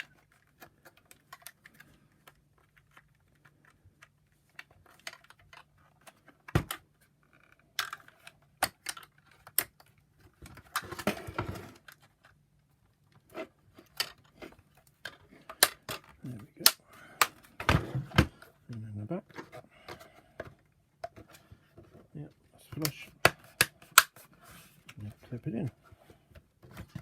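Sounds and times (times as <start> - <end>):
plastic parts clicking and knocking: 0.0 - 27.0
plastic scraping and rattling: 0.0 - 27.0
plastic parts snapping: 7.7 - 11.2, 13.8 - 18.5, 22.7 - 24.3.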